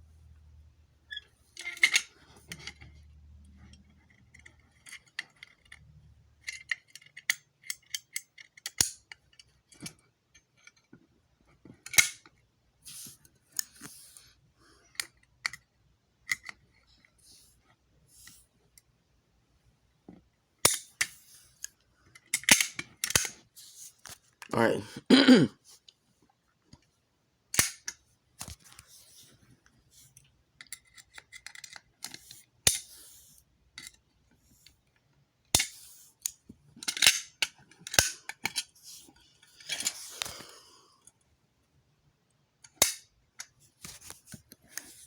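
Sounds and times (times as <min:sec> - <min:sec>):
plastic and metal parts clicking: 0:06.4 - 0:10.9.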